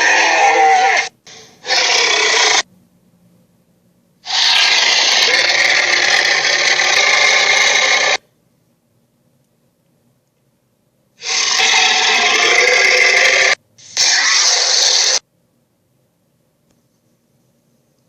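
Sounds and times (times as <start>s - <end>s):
harsh raspy dragon roar: 0.0s - 2.6s, 4.3s - 8.2s, 11.2s - 15.2s.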